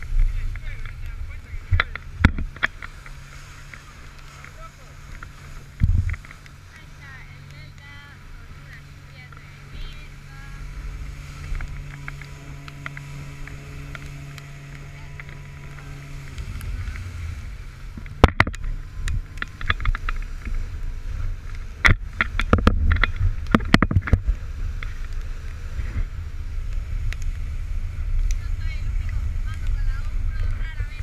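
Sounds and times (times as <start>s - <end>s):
outdoor rumble: 0.0s - 31.0s
steady low hum: 0.0s - 31.0s
wind buffeting microphone: 0.0s - 31.0s
sharp clicks and knocks: 0.5s - 3.2s, 18.0s - 20.6s, 21.5s - 25.2s.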